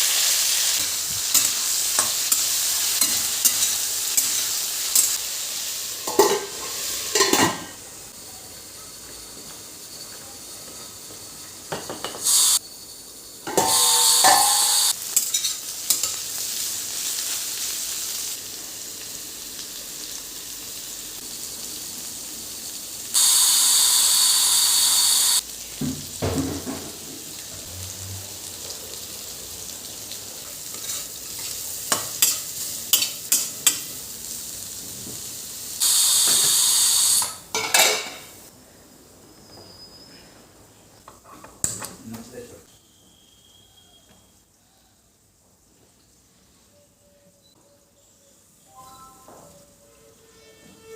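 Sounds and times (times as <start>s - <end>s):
food sizzling in hot oil: 0.0s - 38.5s.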